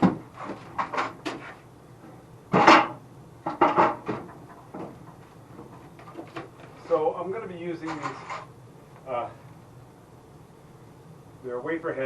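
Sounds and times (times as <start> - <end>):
objects knocking and clattering: 0.0 - 1.6, 2.5 - 6.8.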